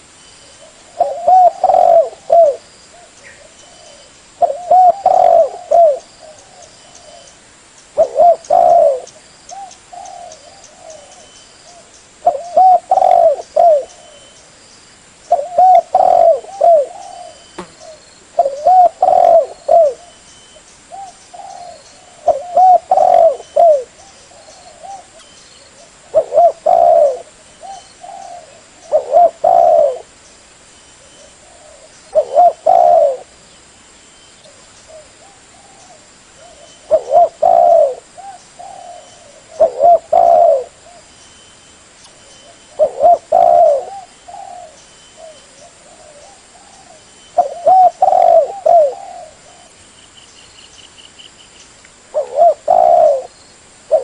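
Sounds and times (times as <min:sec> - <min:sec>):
doves cooing: 0:00.6 - 0:07.3, 0:08.0 - 0:14.4, 0:15.3 - 0:20.2, 0:20.9 - 0:30.1, 0:31.0 - 0:33.4, 0:34.4 - 0:41.1, 0:42.4 - 0:49.8, 0:52.1 - 0:53.3.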